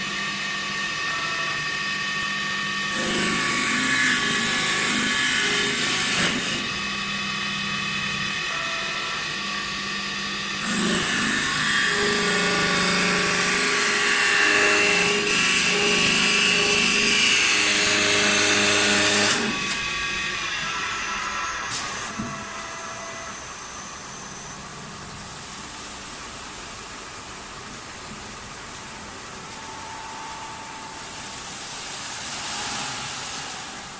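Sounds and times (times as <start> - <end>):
wood lathe motor whine: 0.0 - 25.0.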